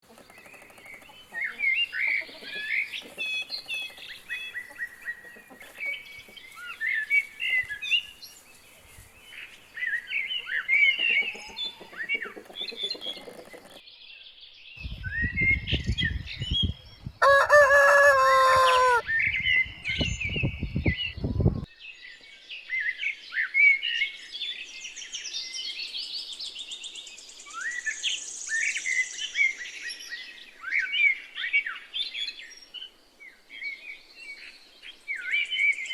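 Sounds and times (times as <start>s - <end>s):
small birds chirping: 0.0s - 17.2s
rooster crowing: 17.2s - 19.0s.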